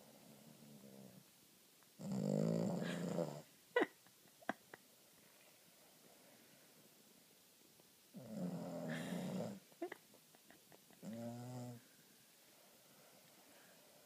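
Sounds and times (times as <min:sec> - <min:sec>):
dog snoring: 0:02.0 - 0:03.4, 0:08.2 - 0:09.6, 0:11.0 - 0:11.9.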